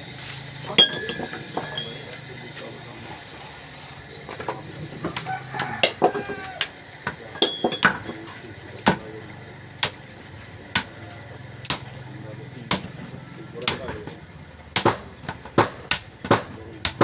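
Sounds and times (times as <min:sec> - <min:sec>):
steady low hum: 0:00.0 - 0:17.0
hammer striking metal: 0:00.7 - 0:02.4, 0:05.0 - 0:09.1, 0:09.8 - 0:10.1, 0:10.7 - 0:11.0, 0:11.6 - 0:12.0, 0:12.7 - 0:13.0, 0:13.6 - 0:14.1, 0:14.7 - 0:17.0.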